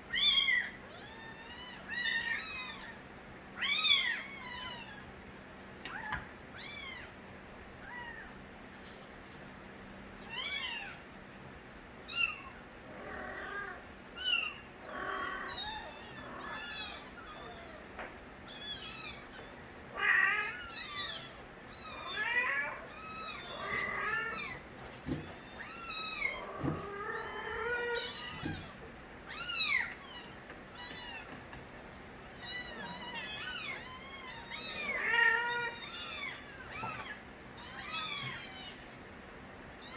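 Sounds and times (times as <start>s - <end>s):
kittens meowing: 0.1s - 3.0s, 3.6s - 5.1s, 5.9s - 7.2s, 10.3s - 11.0s, 12.1s - 17.9s, 18.5s - 31.4s, 32.3s - 38.9s.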